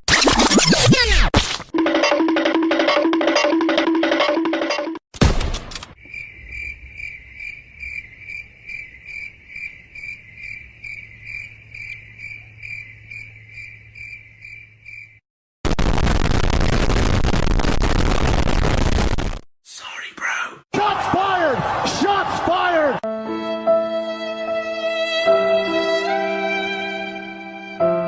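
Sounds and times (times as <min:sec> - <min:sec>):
crickets chirping: 0:05.9 - 0:15.2.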